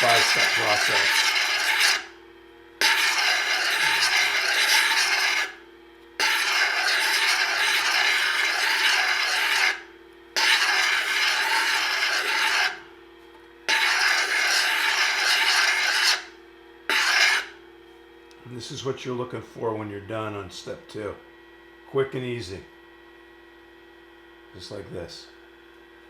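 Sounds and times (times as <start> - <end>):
gritty rasping of stone sanding: 0.0 - 2.1, 2.8 - 5.6, 6.2 - 9.8, 10.4 - 12.8, 13.7 - 16.3, 16.9 - 17.5
grinder motor hum: 0.0 - 18.6.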